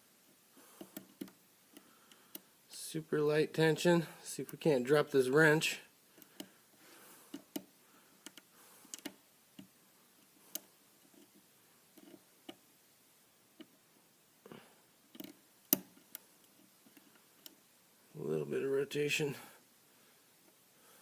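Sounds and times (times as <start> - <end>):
lock pick clicking: 15.1 - 17.6.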